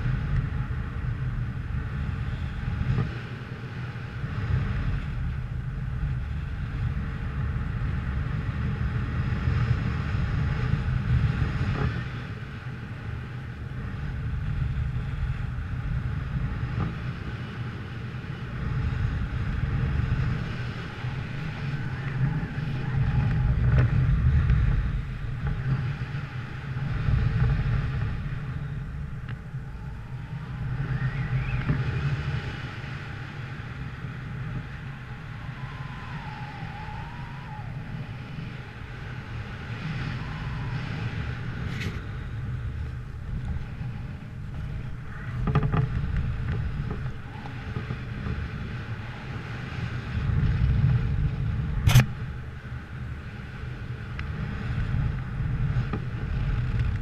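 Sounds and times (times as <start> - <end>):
wind buffeting microphone: 0.0 - 57.0
sharp click: 51.8 - 52.2.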